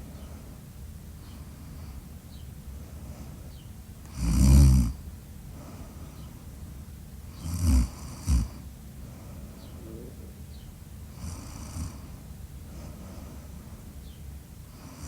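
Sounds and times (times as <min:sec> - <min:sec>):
person snoring: 0:04.1 - 0:04.9.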